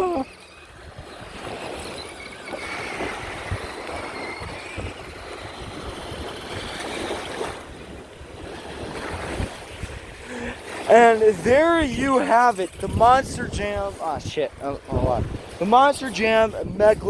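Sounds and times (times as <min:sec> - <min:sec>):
small electric motor whining: 0:00.0 - 0:07.4
steady rushing noise: 0:02.5 - 0:17.0.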